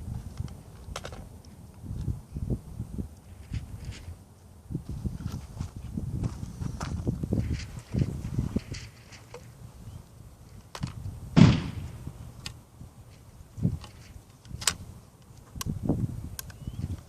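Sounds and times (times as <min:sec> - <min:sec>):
shotgun blast with echo: 0:11.4 - 0:12.0.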